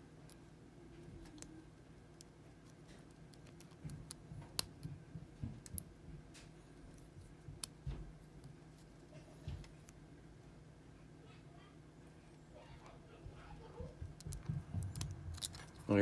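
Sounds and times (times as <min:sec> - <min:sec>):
soft bumps of lock handled: 0:02.9 - 0:10.0, 0:13.8 - 0:15.9.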